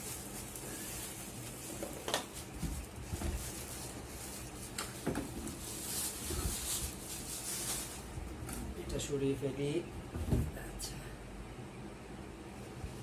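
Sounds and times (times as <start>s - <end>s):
packaging being handled: 0.0s - 8.2s.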